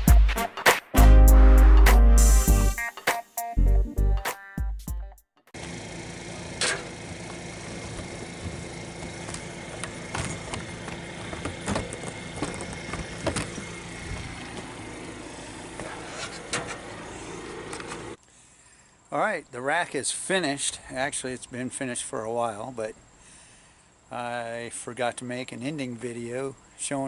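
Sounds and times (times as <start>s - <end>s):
vehicle engine and road noise: 5.6s - 18.2s.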